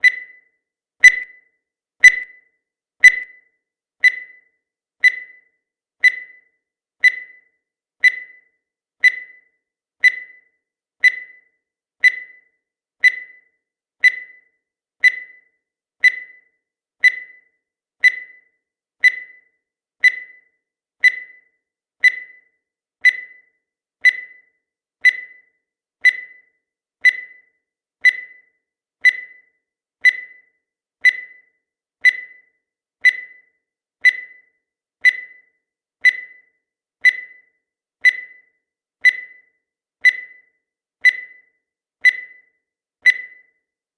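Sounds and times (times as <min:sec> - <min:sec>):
short high beep: 0:01.0 - 0:01.3, 0:02.0 - 0:02.4, 0:03.0 - 0:03.3.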